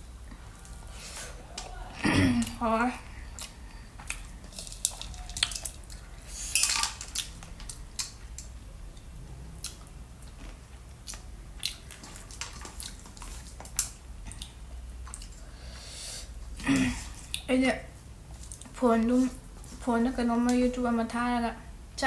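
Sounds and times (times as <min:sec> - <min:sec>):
fruit being chewed: 0:03.0 - 0:06.5, 0:07.1 - 0:15.5.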